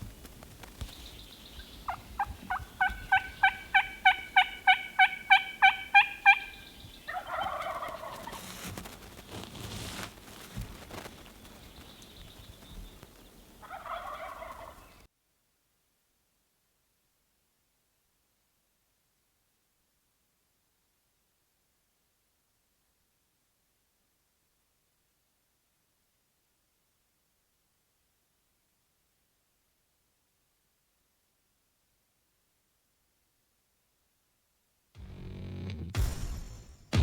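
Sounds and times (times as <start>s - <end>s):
turkey gobbling: 1.5s - 8.4s, 12.6s - 15.1s
turkey yelps: 1.6s - 8.4s, 13.6s - 15.0s.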